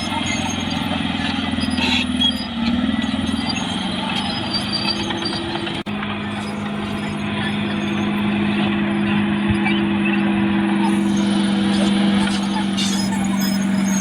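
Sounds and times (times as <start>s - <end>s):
bulldozer diesel engine running: 0.0s - 14.0s.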